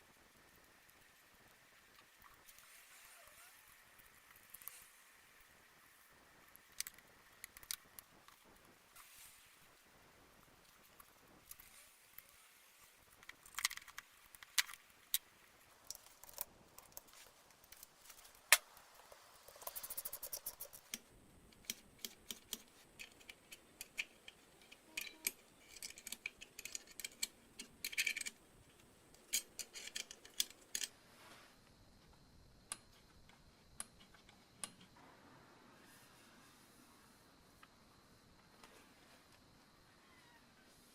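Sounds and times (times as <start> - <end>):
metal parts and tools clinking: 22.5 - 28.4, 29.2 - 31.0.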